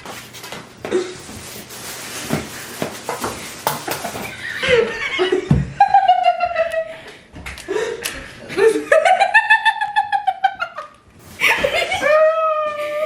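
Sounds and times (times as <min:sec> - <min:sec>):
people laughing: 0:04.2 - 0:07.1, 0:07.7 - 0:13.0.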